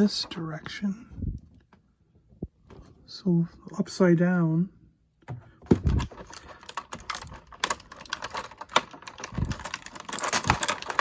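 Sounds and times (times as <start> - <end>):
small plastic parts clicking: 5.7 - 11.0.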